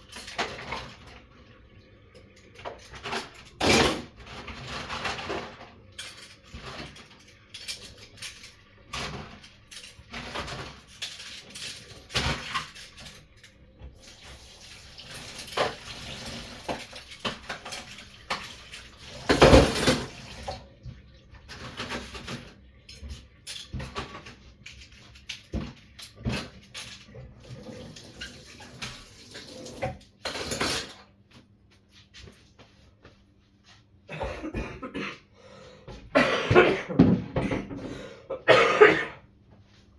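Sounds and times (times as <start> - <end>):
dishes and cutlery clattering: 0.0 - 1.1, 2.2 - 20.6, 21.4 - 29.1, 29.7 - 31.1.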